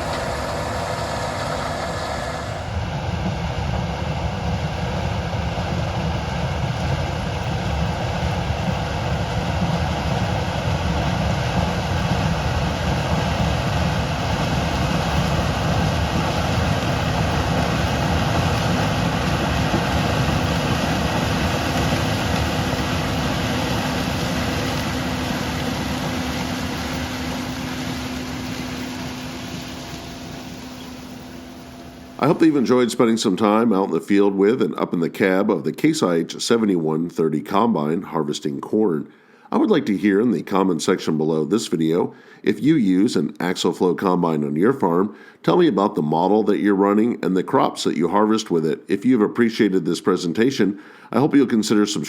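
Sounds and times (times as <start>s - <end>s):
combine harvester running: 0.0s - 33.1s.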